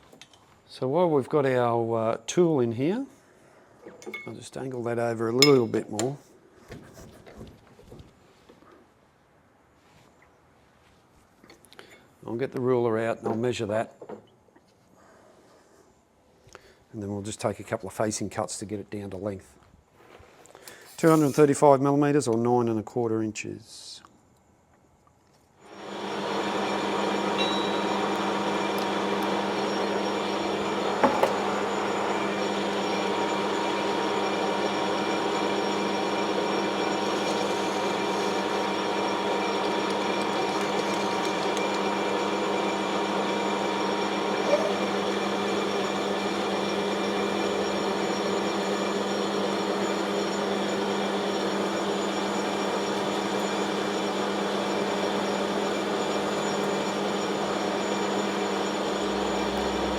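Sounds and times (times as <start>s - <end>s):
metal lathe humming: 25.7s - 59.9s.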